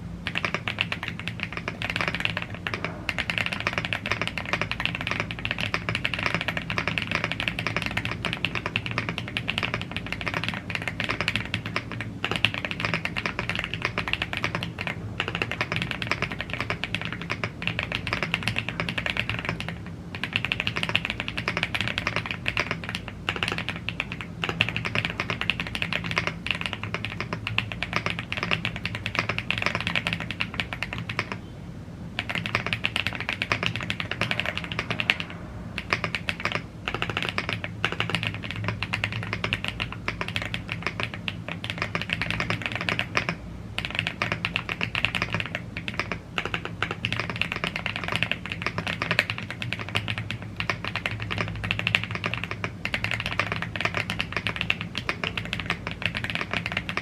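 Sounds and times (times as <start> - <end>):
fast mechanical keyboard typing: 0.0 - 31.5, 32.1 - 57.0.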